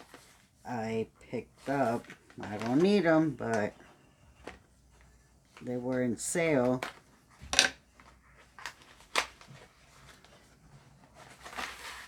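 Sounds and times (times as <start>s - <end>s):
packaging rustle: 1.6s - 3.8s, 7.8s - 12.0s.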